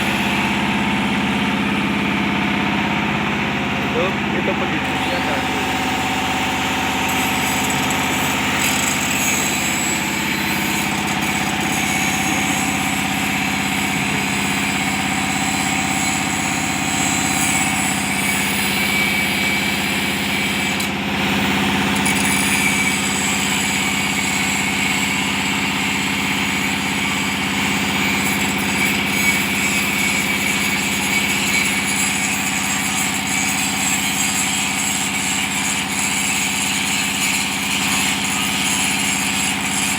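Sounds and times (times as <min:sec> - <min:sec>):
engine idling: 0:00.0 - 0:17.4.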